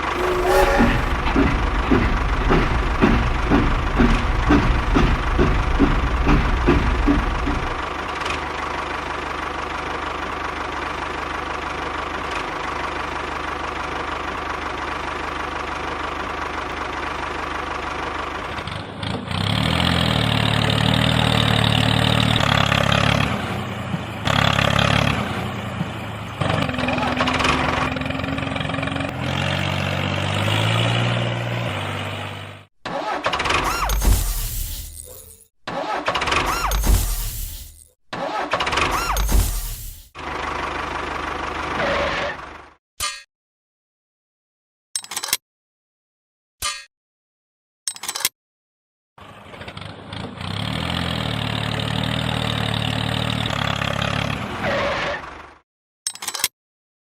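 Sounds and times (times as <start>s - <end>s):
engine running: 0.0s - 32.7s.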